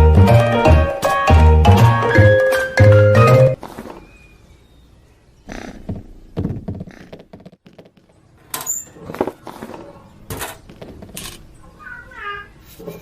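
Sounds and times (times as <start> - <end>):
thumps and knocks: 5.7 - 8.2.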